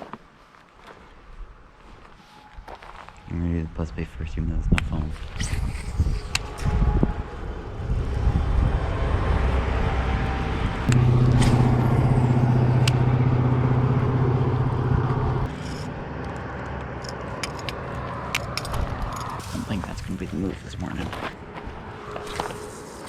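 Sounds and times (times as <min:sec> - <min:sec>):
traffic rumble: 0:00.6 - 0:23.0
vehicle engine drone: 0:05.4 - 0:23.0.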